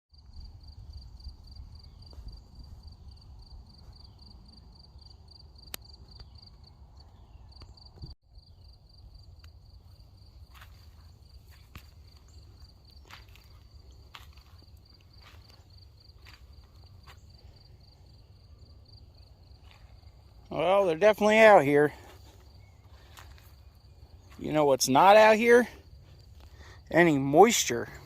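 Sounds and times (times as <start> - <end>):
low rumble of wind: 0.2 - 20.5
insects trilling: 0.2 - 28.0.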